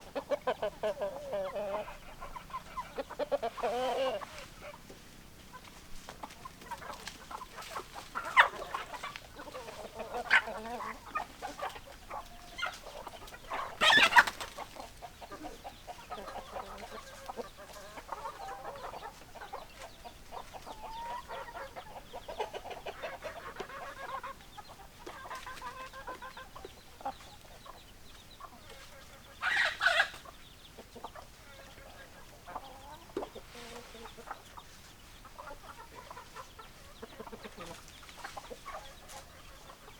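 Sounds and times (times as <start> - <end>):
hens clucking: 0.0 - 39.9
loud chicken squawks: 13.5 - 14.5, 29.4 - 30.2.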